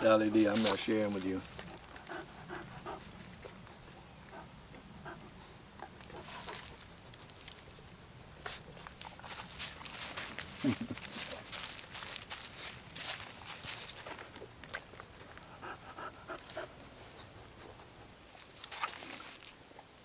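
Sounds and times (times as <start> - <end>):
dog panting: 0.0 - 7.0, 8.4 - 18.6
light clicks and rustles: 6.0 - 15.4.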